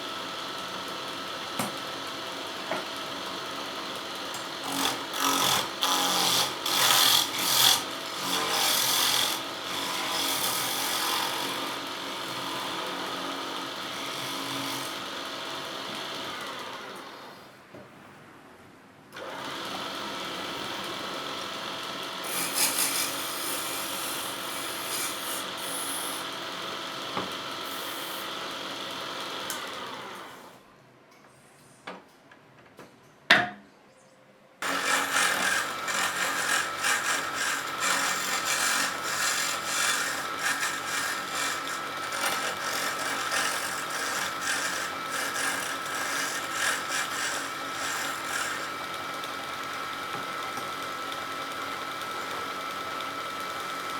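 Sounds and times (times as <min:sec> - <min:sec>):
lathe motor whine: 0:00.0 - 0:17.5, 0:19.2 - 0:30.6, 0:34.6 - 0:53.9
chisel scraping spinning wood: 0:04.5 - 0:13.2, 0:13.9 - 0:15.1, 0:22.2 - 0:26.3, 0:34.6 - 0:53.9.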